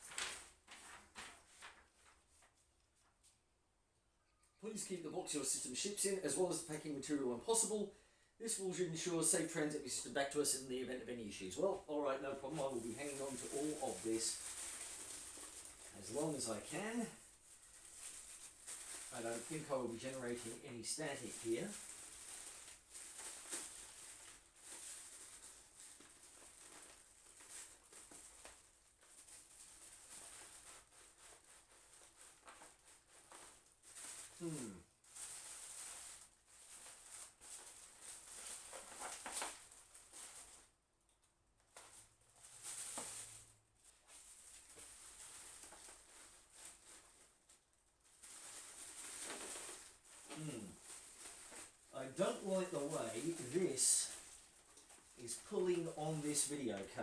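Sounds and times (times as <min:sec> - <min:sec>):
plastic and foam packing rustling: 0:00.0 - 0:03.4, 0:11.4 - 0:57.0.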